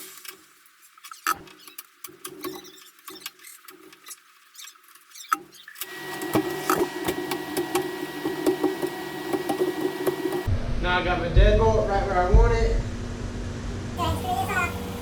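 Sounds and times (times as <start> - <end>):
power drill motor running: 5.8 - 10.5.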